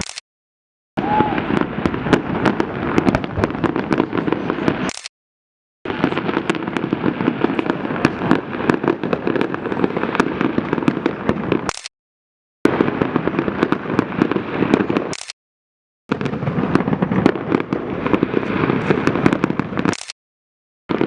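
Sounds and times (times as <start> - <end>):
fireworks bangs and crackles: 1.0 - 5.1, 5.9 - 11.9, 12.7 - 15.3, 16.1 - 20.2.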